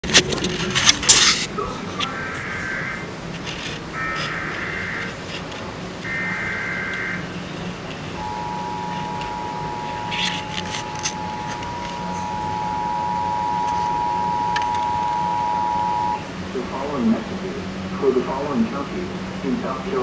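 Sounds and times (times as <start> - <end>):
warbling data tones: 6.0 - 7.3, 8.0 - 16.3
two-tone attention signal: 8.2 - 16.2.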